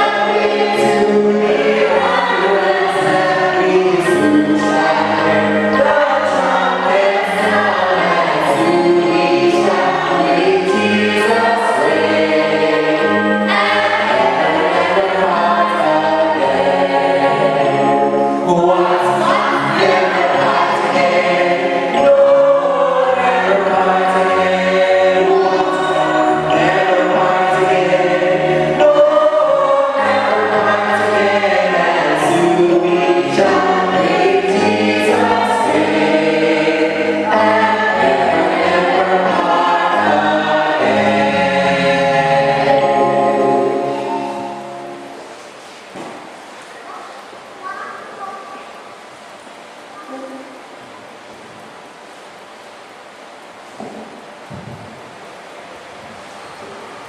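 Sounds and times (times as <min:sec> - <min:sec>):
instrumental accompaniment: 0:00.0 - 0:45.6
choir singing a hymn: 0:00.0 - 0:46.3.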